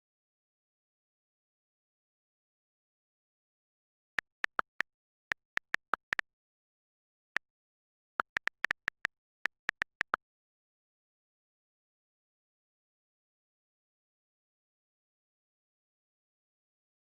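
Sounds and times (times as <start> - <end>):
short sharp clicks: 4.2 - 6.2, 8.2 - 10.2.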